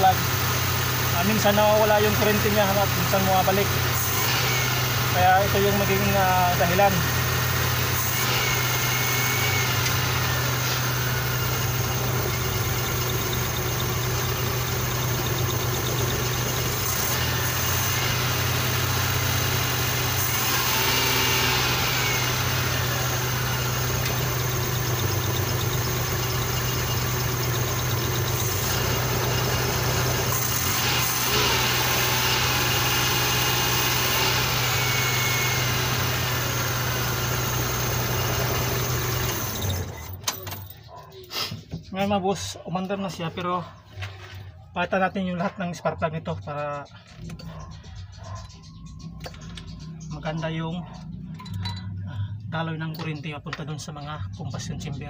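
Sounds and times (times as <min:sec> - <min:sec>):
misfiring engine idling: 0:00.0 - 0:04.1, 0:08.8 - 0:21.2, 0:22.2 - 0:34.2.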